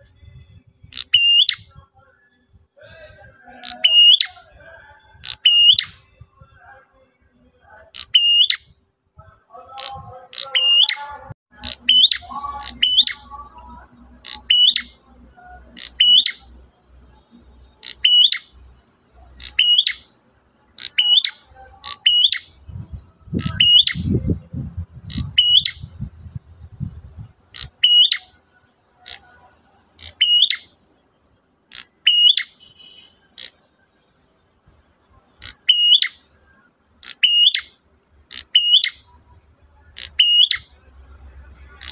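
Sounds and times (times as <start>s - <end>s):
bird calling: 3.6s - 4.4s, 5.2s - 6.0s, 9.7s - 13.5s, 14.2s - 16.6s, 17.7s - 20.1s, 20.7s - 22.6s, 23.3s - 24.2s, 25.0s - 25.9s, 27.5s - 28.4s, 29.0s - 29.4s, 30.0s - 30.8s, 31.7s - 33.6s, 35.4s - 36.3s, 37.0s - 39.3s, 39.9s - 40.7s
low rumble: 22.5s - 27.5s.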